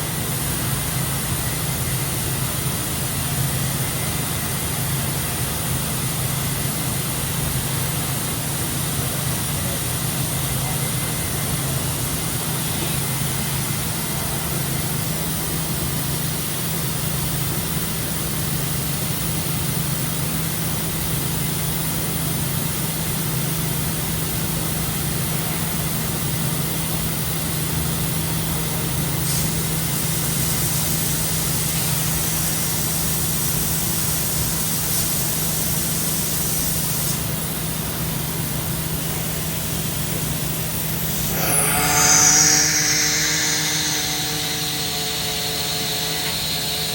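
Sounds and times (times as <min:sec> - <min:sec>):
machine hiss: 0:00.0 - 0:46.9
machine hum: 0:38.0 - 0:46.9.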